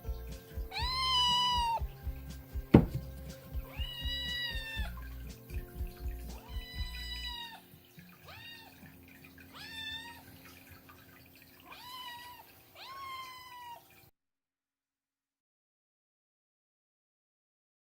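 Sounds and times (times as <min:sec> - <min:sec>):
kitten meowing: 0:00.7 - 0:01.8, 0:03.7 - 0:04.9, 0:06.4 - 0:07.6, 0:08.2 - 0:08.8, 0:09.5 - 0:10.3, 0:11.7 - 0:13.9.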